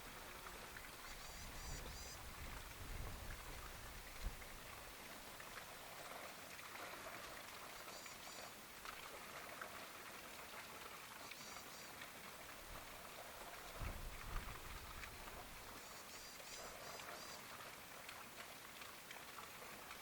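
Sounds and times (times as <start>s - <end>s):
steady outdoor hiss: 0.0s - 20.0s.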